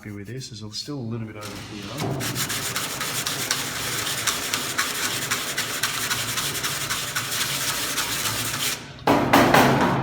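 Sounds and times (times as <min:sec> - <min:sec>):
sandpaper rubbing on wood: 0:01.4 - 0:08.8.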